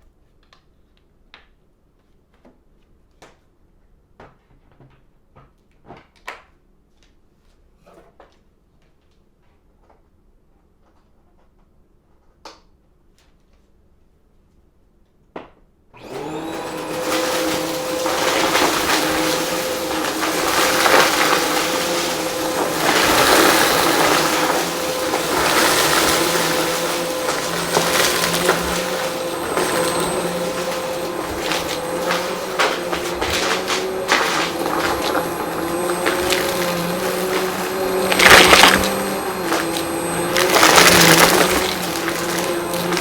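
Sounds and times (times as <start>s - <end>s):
vacuum cleaner running: 16.0s - 43.0s.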